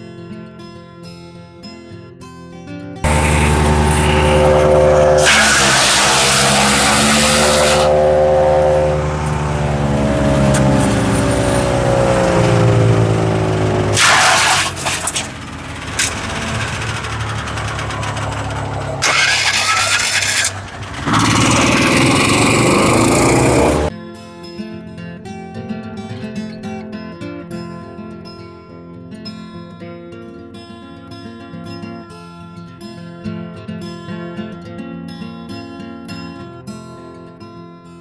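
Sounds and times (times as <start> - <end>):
wood chipper engine running: 3.1 - 23.9.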